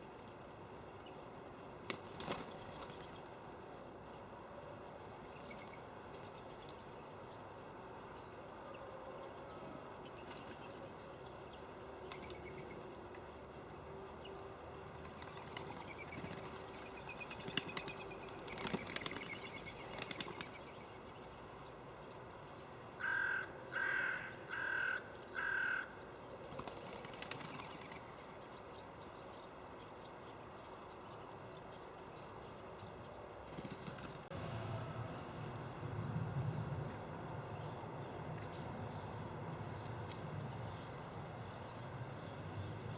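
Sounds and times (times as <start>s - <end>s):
crow cawing: 23.0s - 26.0s.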